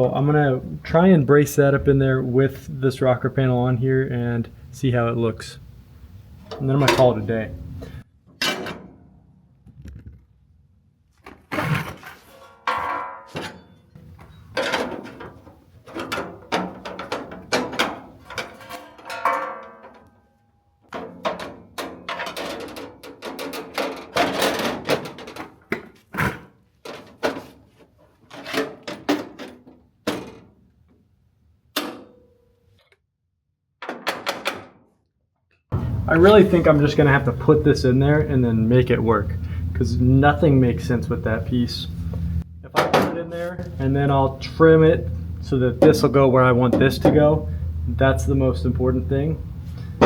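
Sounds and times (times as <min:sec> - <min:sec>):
steel panels clanking: 0:06.4 - 0:09.1, 0:12.2 - 0:20.3, 0:20.9 - 0:25.6.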